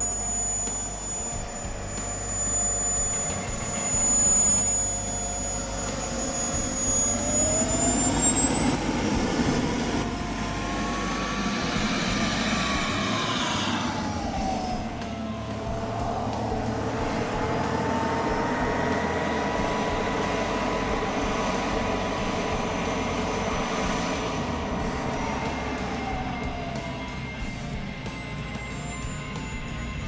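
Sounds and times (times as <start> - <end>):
exhaust rush: 0.0 - 30.0
jet turbine engine whining: 0.0 - 30.0.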